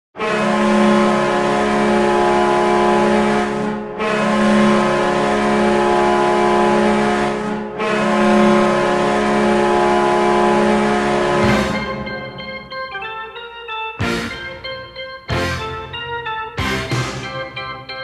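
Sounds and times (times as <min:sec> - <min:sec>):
loud deep air horn blasts: 0:00.2 - 0:12.8.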